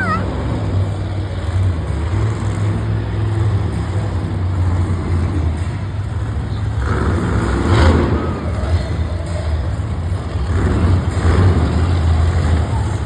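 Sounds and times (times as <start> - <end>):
monster truck engine roaring: 0.0 - 13.0.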